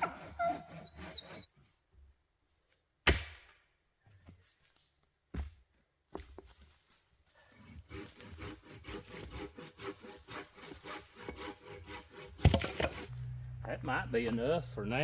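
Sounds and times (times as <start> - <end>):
sticks rustling: 6.4 - 13.2.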